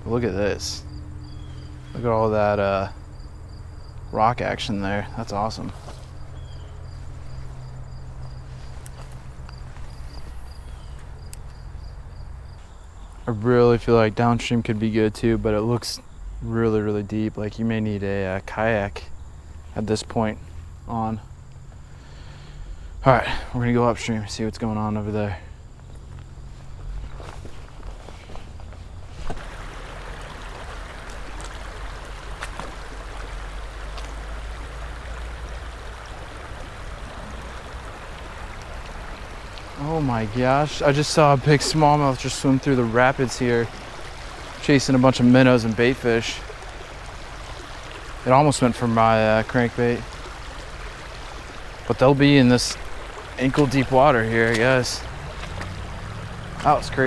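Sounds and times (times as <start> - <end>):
creek water running over rocks: 0.0 - 57.0
crickets chirping: 0.0 - 57.0
faint clicks: 8.8 - 11.7.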